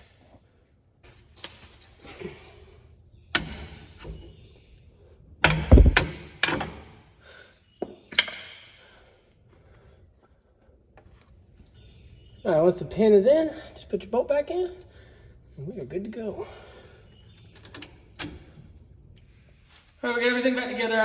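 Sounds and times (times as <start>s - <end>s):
metal knocks and clanks: 5.4s - 7.0s.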